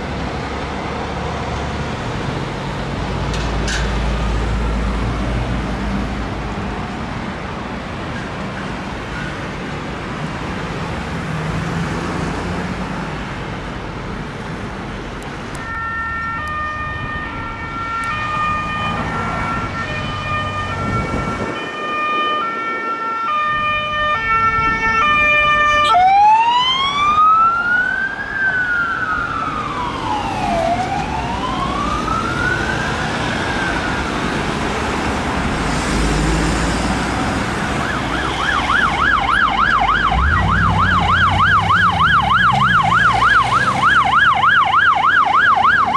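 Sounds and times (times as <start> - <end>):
road traffic: 0.0 - 45.9
emergency siren hi-lo: 15.6 - 34.6, 37.4 - 45.9
siren wail rising and falling: 15.6 - 35.6, 36.2 - 45.9.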